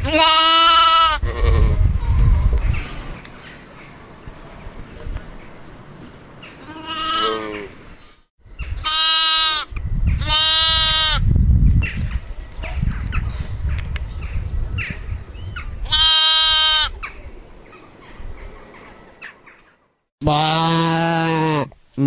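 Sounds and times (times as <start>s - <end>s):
lamb bleating: 0.0s - 1.7s, 6.7s - 7.7s, 8.8s - 11.2s, 15.9s - 17.0s, 20.2s - 21.7s.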